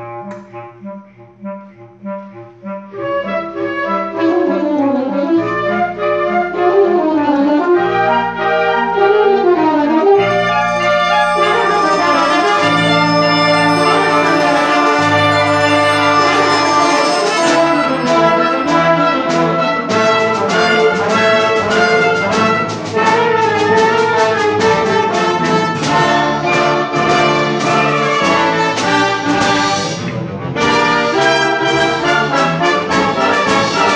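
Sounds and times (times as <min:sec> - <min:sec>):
instrumental ensemble playing chords: 0:10.2 - 0:33.9.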